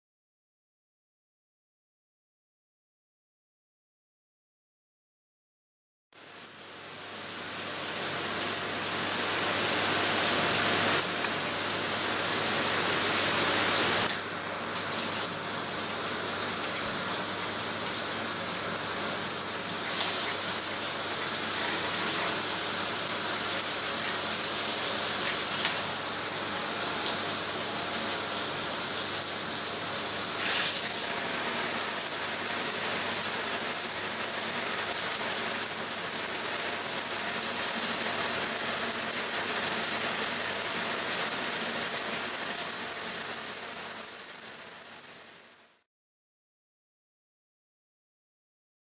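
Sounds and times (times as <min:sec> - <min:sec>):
shower head spraying water: 0:13.8 - 0:33.5.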